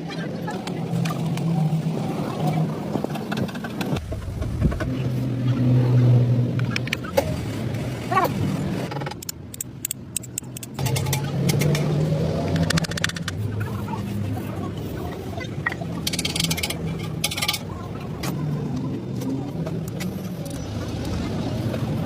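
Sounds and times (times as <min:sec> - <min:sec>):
sharp clicks and knocks: 0:08.9 - 0:13.4.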